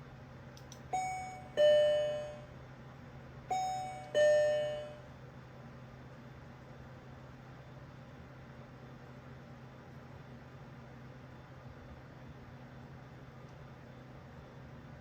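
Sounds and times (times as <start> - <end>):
electronic two-tone chime: 1.0 - 2.5, 3.5 - 5.0.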